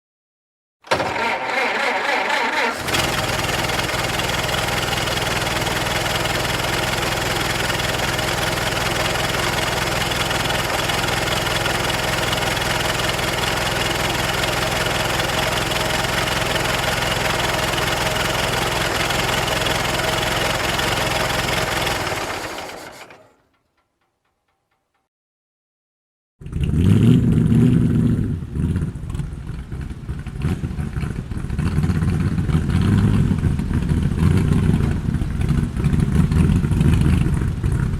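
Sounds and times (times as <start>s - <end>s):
car starter cranking: 0.8s - 24.6s
car engine idling: 2.5s - 23.5s, 28.9s - 37.9s.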